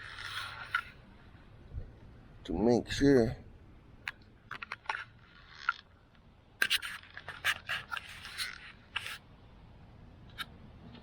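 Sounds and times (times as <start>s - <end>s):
camera handling clicks and rustles: 4.1s - 5.9s, 6.6s - 9.2s.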